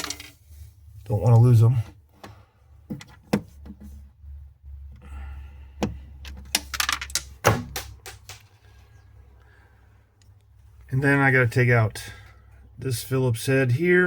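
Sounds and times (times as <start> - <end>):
tools and plastic caps clicking: 6.3 - 8.5.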